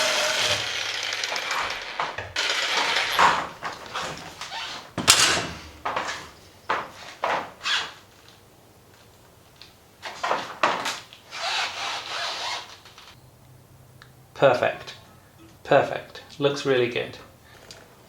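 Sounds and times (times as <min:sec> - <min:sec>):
tools scraping and knocking: 0:01.3 - 0:06.4.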